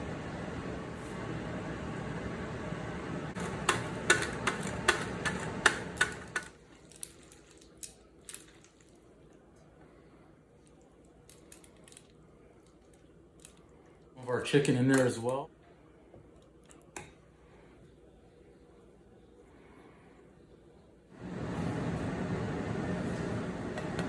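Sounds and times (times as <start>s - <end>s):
pasta squishing in sauce: 3.4s - 9.8s.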